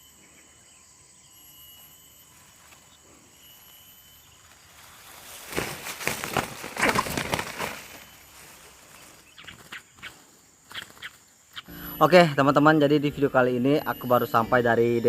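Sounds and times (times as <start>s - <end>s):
rustling footsteps: 4.4s - 10.3s.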